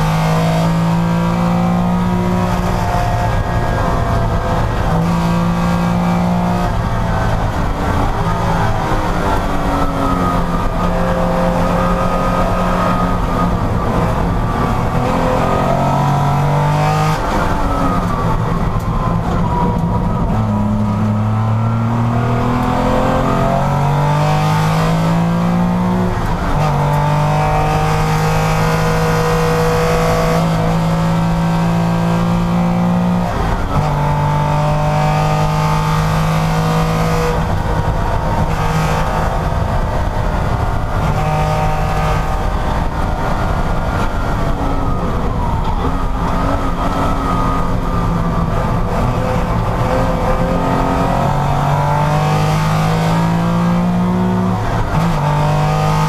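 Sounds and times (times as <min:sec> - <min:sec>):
racing car engine revving: 0:00.0 - 0:56.0.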